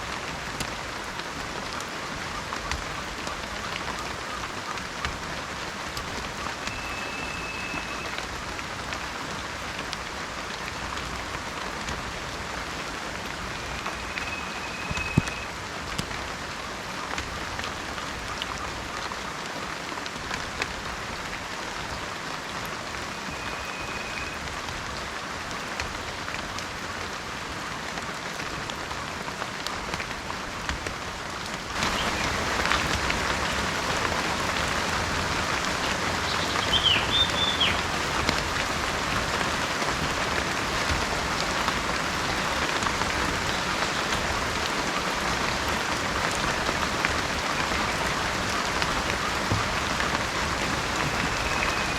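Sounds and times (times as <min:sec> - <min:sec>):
steady rainfall: 0:00.0 - 0:51.9
whistled bird notes: 0:06.7 - 0:08.2, 0:13.6 - 0:15.5, 0:23.1 - 0:24.4, 0:36.3 - 0:37.8, 0:51.1 - 0:51.9
bird chirp: 0:36.3 - 0:37.8.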